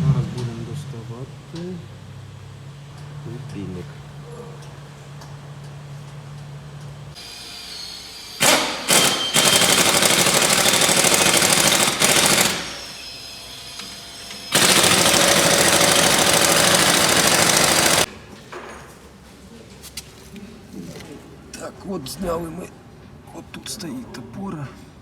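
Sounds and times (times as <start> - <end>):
impact wrench hammering: 8.3 - 13.0, 13.8 - 18.1.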